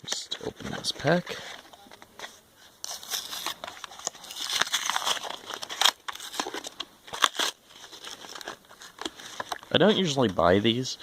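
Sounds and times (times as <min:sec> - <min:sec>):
card packaging crinkling and tearing: 0:02.8 - 0:10.1.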